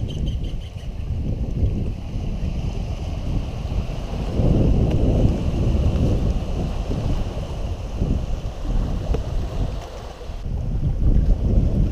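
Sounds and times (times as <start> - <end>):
wind buffeting microphone: 0.0 - 11.9
sea waves washing: 1.1 - 10.6.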